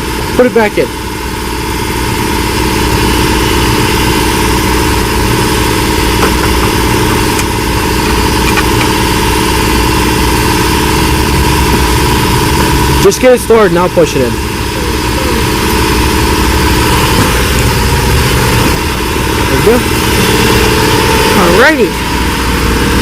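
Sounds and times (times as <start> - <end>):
steady high tone: 0.0 - 23.0
utility vehicle engine running: 0.0 - 23.0.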